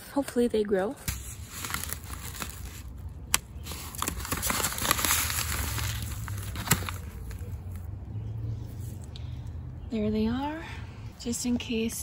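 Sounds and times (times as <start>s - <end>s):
paper packet crinkling: 1.1s - 7.9s.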